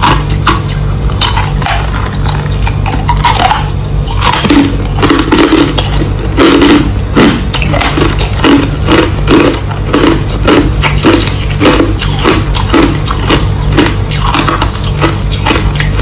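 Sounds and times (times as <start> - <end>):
ice being chewed: 0.0 - 16.0
low hum: 0.0 - 16.0.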